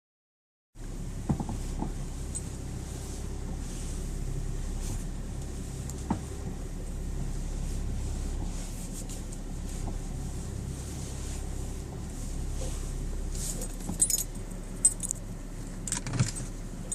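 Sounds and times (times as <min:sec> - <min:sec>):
car engine idling: 0:00.8 - 0:16.9
steering column knocks: 0:01.2 - 0:02.1.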